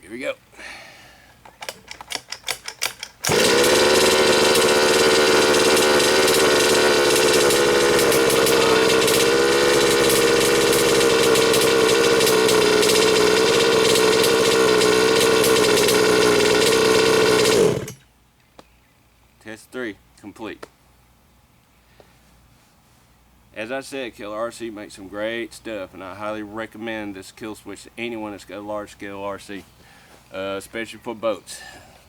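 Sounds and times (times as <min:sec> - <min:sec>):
small two-stroke engine running: 0:02.8 - 0:18.0.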